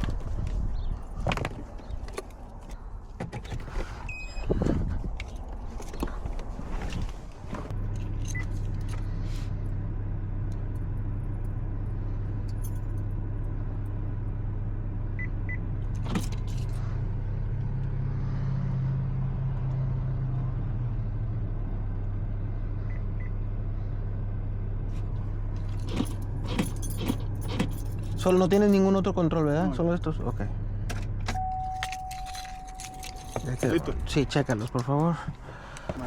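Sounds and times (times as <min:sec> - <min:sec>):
car engine idling: 0:21.1 - 0:36.0
faint short beeps: 0:31.4 - 0:33.2.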